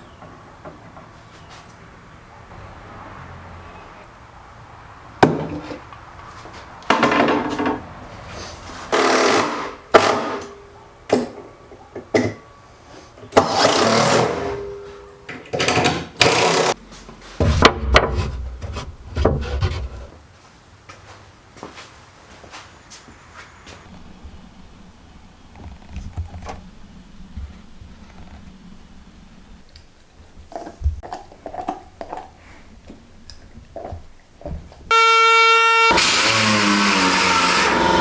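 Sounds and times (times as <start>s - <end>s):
power tool working wood: 34.9s - 38.0s.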